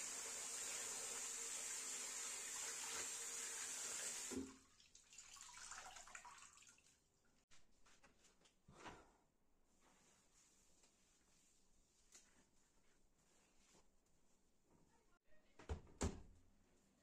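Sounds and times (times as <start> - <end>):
water running from tap: 0.0 - 7.0
faint handling sounds: 7.5 - 15.2.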